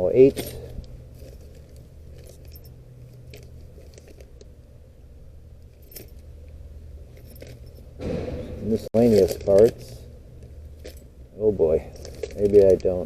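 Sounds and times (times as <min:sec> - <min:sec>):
low steady hum: 0:00.0 - 0:13.0
metal keys clinking: 0:00.2 - 0:04.4, 0:05.6 - 0:08.0, 0:09.0 - 0:11.2, 0:11.8 - 0:13.0.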